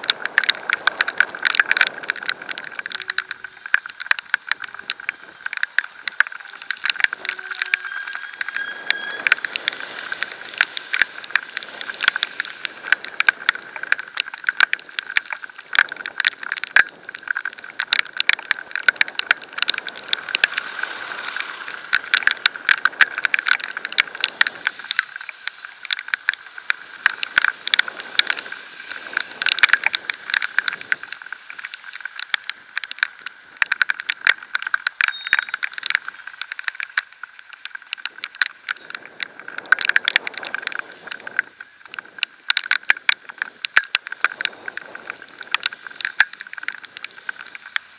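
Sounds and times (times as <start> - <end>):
wind and spray rushing: 0.0 - 25.6
rain drops pelting camera: 0.0 - 47.9.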